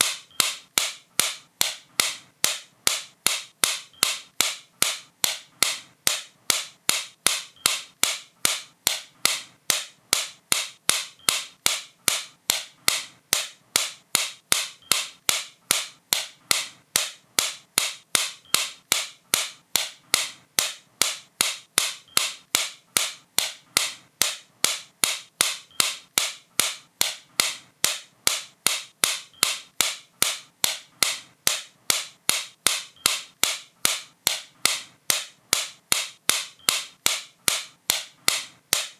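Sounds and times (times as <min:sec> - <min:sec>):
sharp dry clicks: 0:00.0 - 0:38.9.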